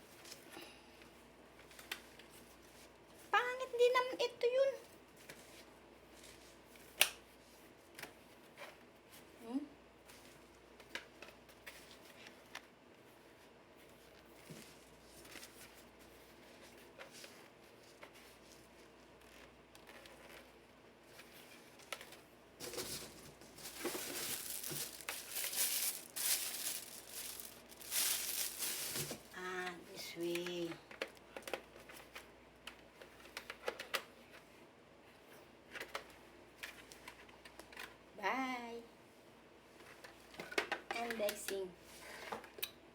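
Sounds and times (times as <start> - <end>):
packaging crinkling and tearing: 21.8 - 29.4.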